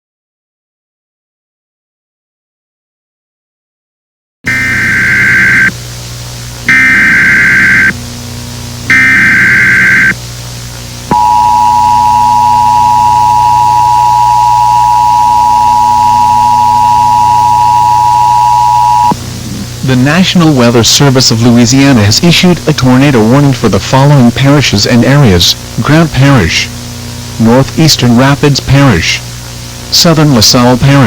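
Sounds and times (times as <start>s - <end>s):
digital data bursts: 4.5s - 5.8s, 6.7s - 8.0s, 8.9s - 10.2s
two-tone attention signal: 4.5s - 5.8s, 6.7s - 8.0s, 8.9s - 10.2s, 11.1s - 19.2s
steady low hum: 4.5s - 31.0s.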